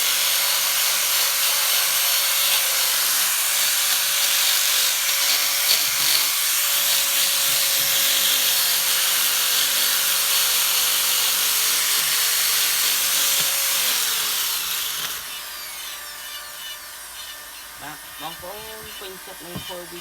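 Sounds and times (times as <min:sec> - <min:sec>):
sanding on wood: 0:00.0 - 0:20.0
motor hum: 0:12.0 - 0:20.0.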